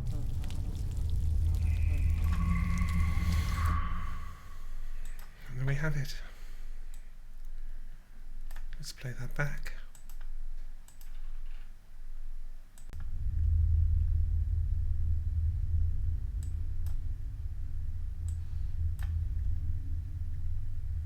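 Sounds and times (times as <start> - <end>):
deep low rumble: 0.0 - 5.3, 13.0 - 21.0
sharp clicks: 8.5 - 8.8, 9.9 - 10.3.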